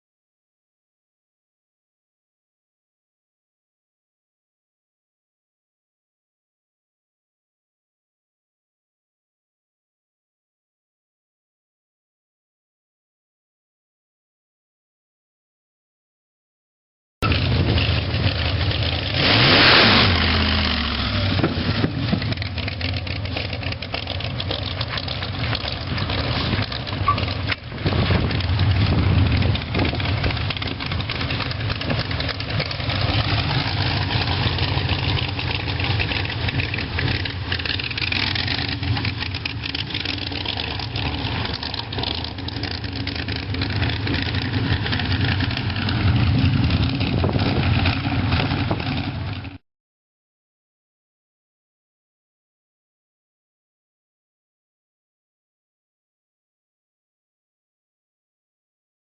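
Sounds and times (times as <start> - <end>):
car engine revving: 17.2 - 49.5.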